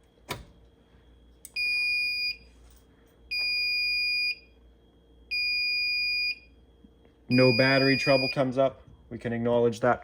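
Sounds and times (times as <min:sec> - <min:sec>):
alarm panel beeping: 0:03.3 - 0:04.4, 0:05.3 - 0:06.5, 0:07.3 - 0:08.6.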